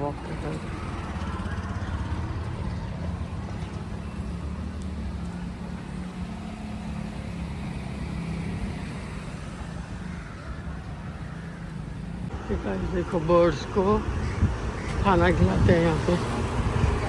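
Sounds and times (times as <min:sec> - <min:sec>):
engine hum: 0:00.0 - 0:17.0
low rumble of road traffic: 0:00.0 - 0:17.0.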